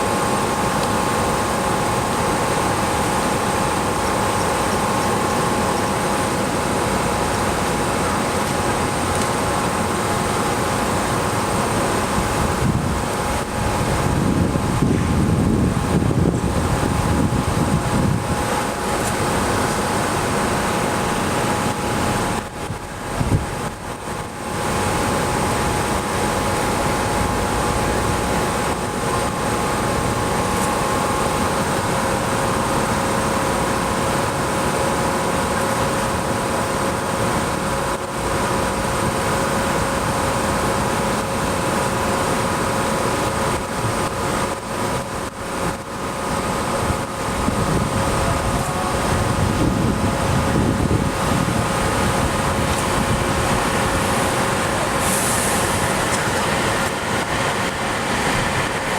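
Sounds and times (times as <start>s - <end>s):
train equipment mechanical hum: 0.0s - 58.9s
high thin whine: 46.8s - 58.9s.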